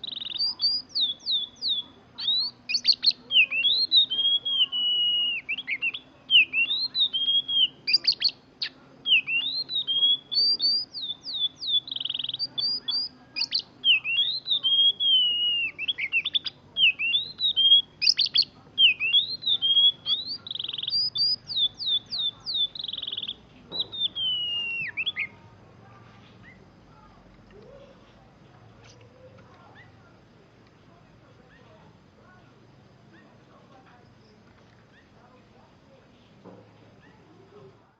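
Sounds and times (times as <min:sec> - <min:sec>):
bird singing whistled song: 0:00.0 - 0:25.4.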